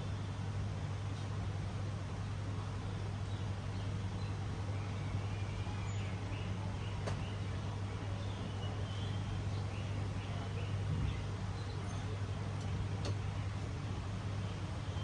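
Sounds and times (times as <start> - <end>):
small birds chirping: 3.2 - 12.4.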